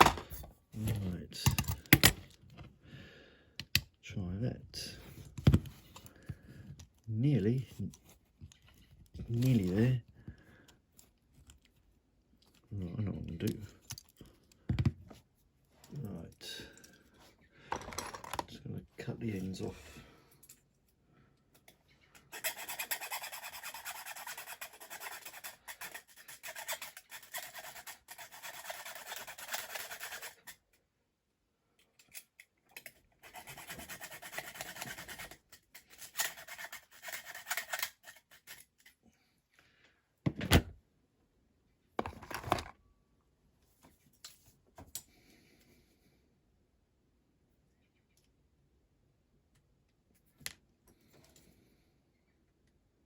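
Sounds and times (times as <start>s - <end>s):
hand tool rasping on model part: 22.3s - 30.6s, 33.2s - 38.7s.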